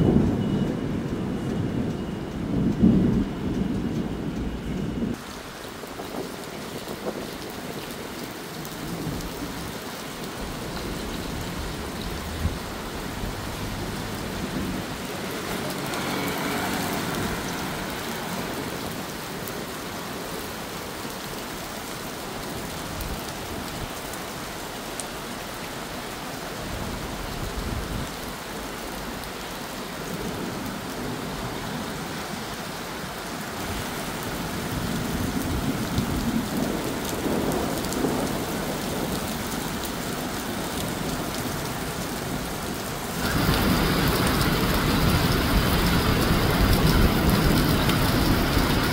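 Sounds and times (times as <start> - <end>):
rolling thunder rumbling: 0.0 - 7.9, 34.3 - 48.9
steady rain: 0.0 - 48.9.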